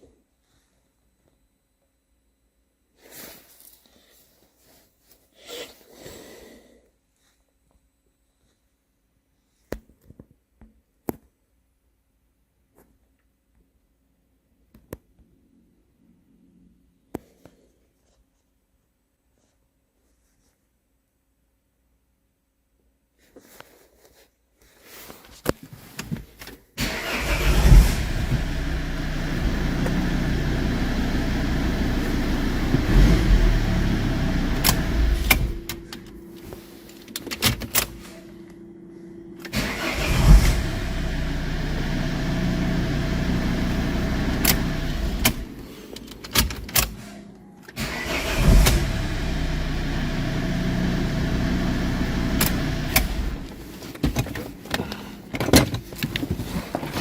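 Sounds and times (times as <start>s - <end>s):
car engine starting and running: 26.8s - 55.7s
faint steady hum: 28.0s - 46.2s
clicks: 34.5s - 38.6s.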